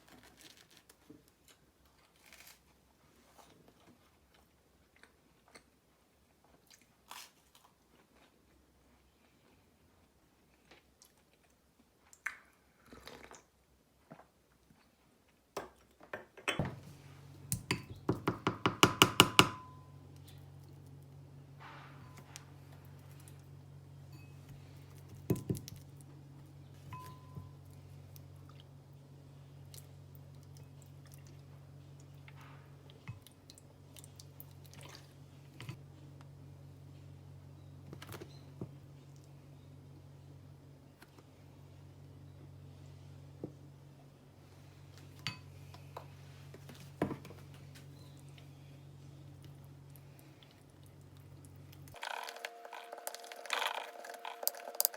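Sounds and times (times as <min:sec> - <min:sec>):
person chewing quietly: 0:03.2 - 0:15.4, 0:27.7 - 0:28.8, 0:29.6 - 0:36.3, 0:47.7 - 0:54.9
appliance humming: 0:16.5 - 0:54.9.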